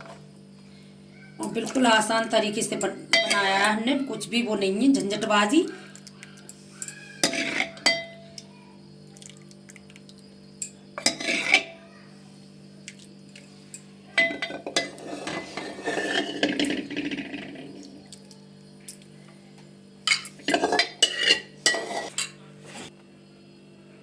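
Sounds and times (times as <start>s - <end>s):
metal spoon clinking against dishes: 2.7s - 3.8s, 6.0s - 8.2s, 10.6s - 11.8s, 13.7s - 17.4s, 20.1s - 22.4s.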